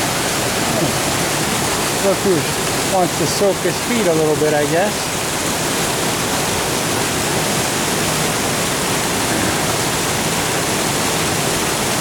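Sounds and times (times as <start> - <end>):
brook water pouring over falls: 0.0 - 12.0.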